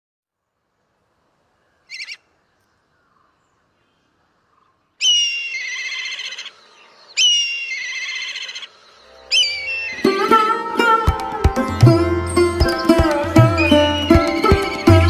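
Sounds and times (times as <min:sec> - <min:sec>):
kite calling with quavering trill: 0:09.2 - 0:11.0.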